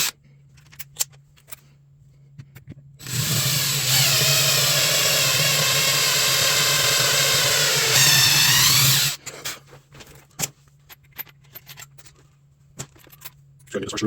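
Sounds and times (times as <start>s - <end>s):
electric drill running under load: 3.0s - 9.2s.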